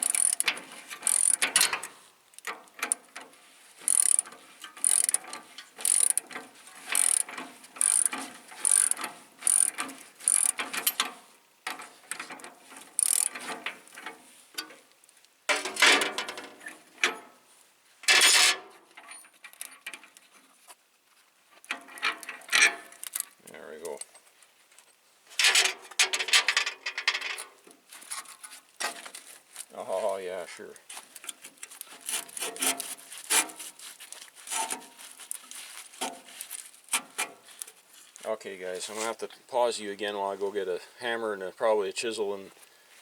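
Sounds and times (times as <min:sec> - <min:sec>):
ratchet wrench clicking: 0:00.0 - 0:01.7, 0:03.9 - 0:06.3, 0:06.9 - 0:11.0, 0:13.0 - 0:13.4.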